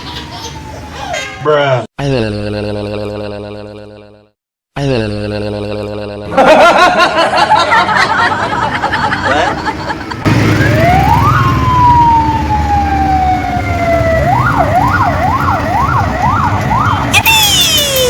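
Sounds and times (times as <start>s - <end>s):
police siren: 0.4s - 1.1s, 10.3s - 18.0s.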